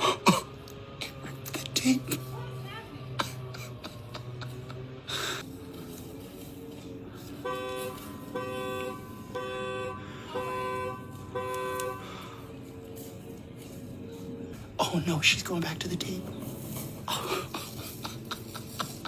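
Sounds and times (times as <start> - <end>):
car alarm horn honking: 7.3 - 12.6.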